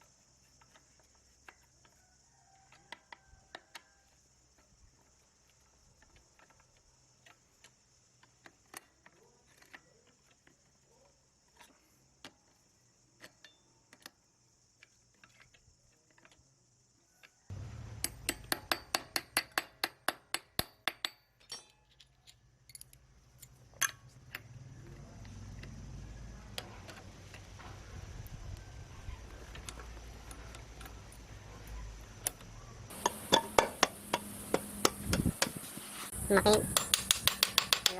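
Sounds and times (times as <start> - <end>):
metal parts and tools clinking: 21.2 - 24.5.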